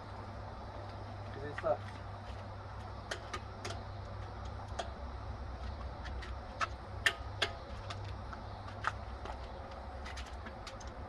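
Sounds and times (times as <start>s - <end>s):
steady low hum: 0.0s - 11.0s
tools and brake parts clicking: 2.8s - 11.0s.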